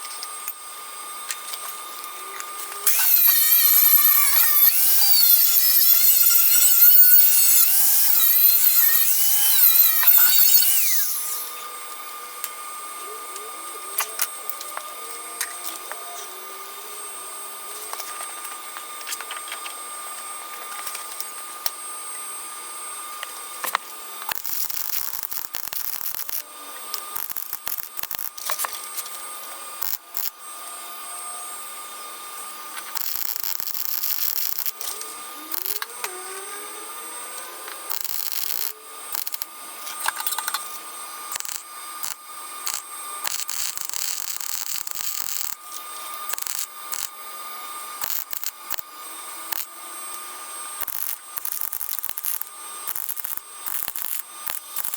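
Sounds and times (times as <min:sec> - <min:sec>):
power tool running: 0:00.0 - 0:54.9
steady high whine: 0:01.5 - 0:16.0.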